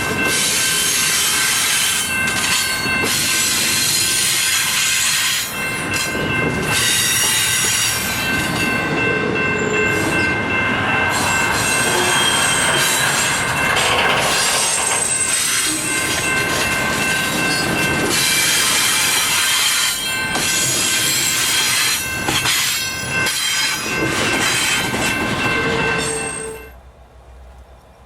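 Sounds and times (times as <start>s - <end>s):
train wheels squealing: 0.0s - 8.8s, 11.0s - 26.8s
freight train rumbling past: 0.0s - 28.0s
knocks from train cars: 13.1s - 15.1s.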